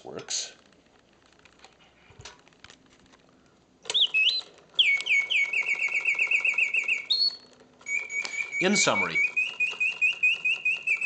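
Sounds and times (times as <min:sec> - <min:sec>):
mechanical bird whistling: 0:03.8 - 0:11.0.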